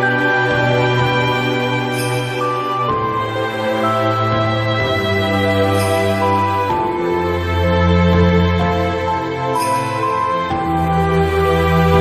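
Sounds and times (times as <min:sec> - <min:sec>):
bright shimmer: 0:00.0 - 0:07.1, 0:09.6 - 0:12.0
soft music with held chords: 0:00.0 - 0:12.0.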